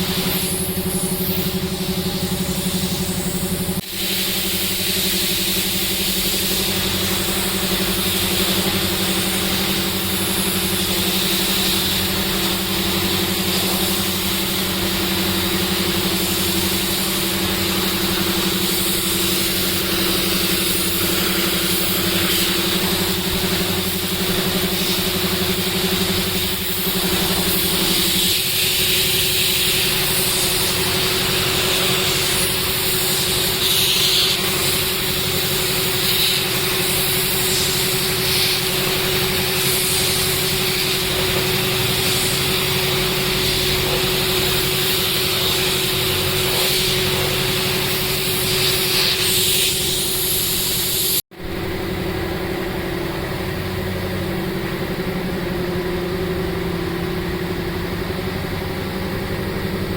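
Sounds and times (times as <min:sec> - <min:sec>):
machine hum: 0:51.3 - 0:59.9.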